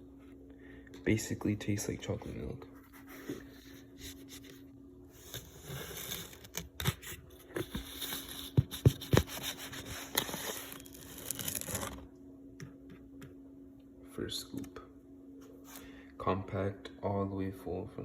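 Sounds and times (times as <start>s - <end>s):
packaging rustling and crinkling: 5.9s - 12.1s.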